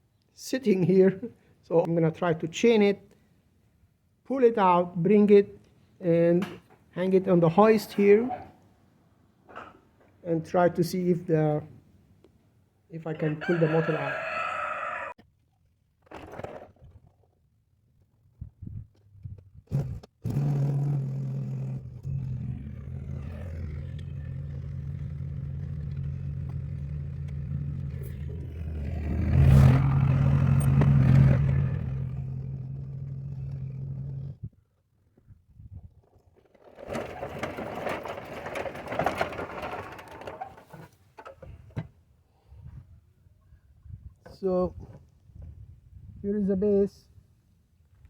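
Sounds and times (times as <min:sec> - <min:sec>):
clattering and rattling: 0:22.9 - 0:32.5, 0:36.0 - 0:41.9.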